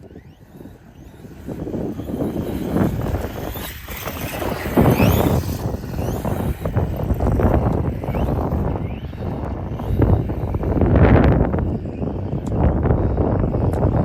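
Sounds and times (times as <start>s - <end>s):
rc truck motors whining: 0.0s - 14.0s
wind buffeting microphone: 0.0s - 14.0s
tyres on rough ground: 0.1s - 9.8s.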